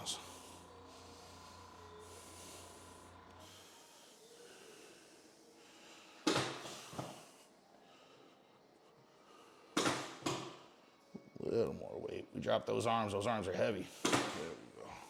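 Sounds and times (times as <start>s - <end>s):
forceful breath through nose: 0.1s - 10.3s.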